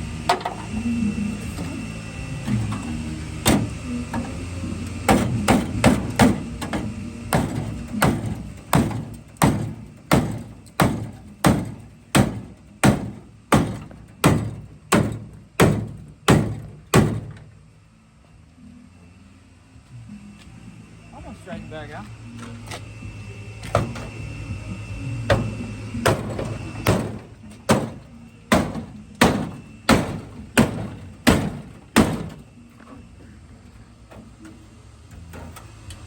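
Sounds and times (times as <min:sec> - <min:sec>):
hammer pounding steel: 0:05.0 - 0:17.4, 0:25.2 - 0:32.6.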